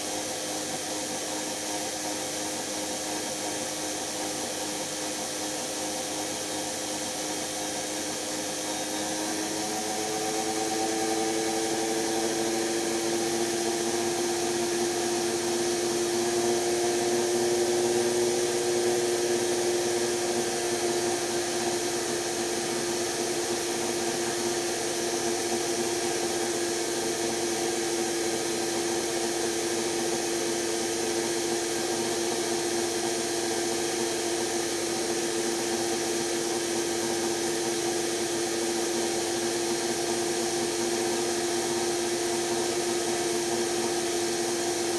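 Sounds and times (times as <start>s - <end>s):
washing machine motor whining: 8.5s - 36.3s.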